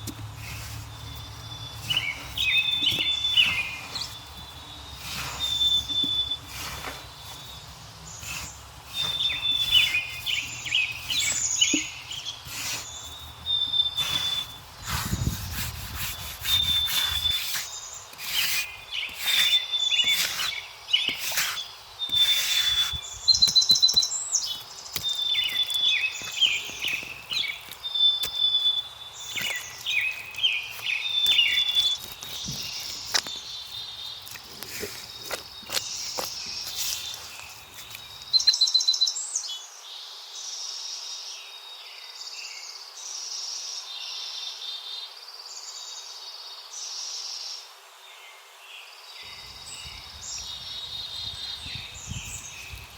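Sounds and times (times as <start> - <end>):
rustling or scraping noises: 0.0 - 38.4
songbird singing: 0.0 - 52.9.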